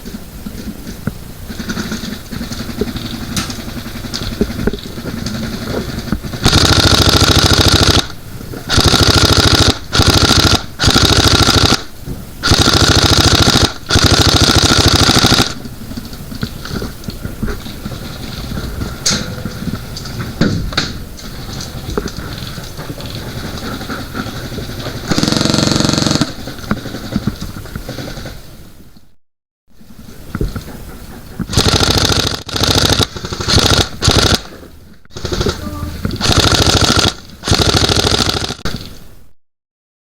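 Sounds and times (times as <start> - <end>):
airsoft gun firing bursts: 1.5 - 15.7, 23.1 - 27.2, 31.5 - 34.5, 35.1 - 38.8
quiet clicks and rustling: 15.3 - 29.1.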